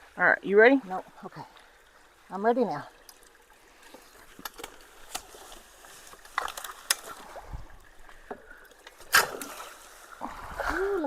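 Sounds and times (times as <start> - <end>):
water sloshing: 0.0 - 11.0
sticks knocking and crunching: 4.3 - 7.2.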